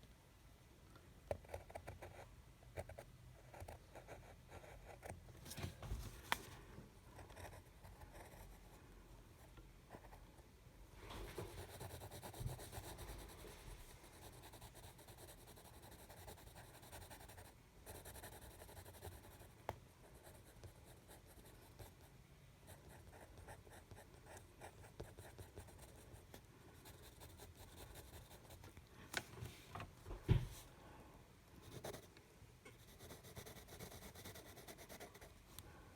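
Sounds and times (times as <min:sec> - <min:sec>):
pencil scratching on paper: 0:07.2 - 0:08.6, 0:11.4 - 0:19.5, 0:22.7 - 0:28.6, 0:31.7 - 0:32.1, 0:32.8 - 0:35.3.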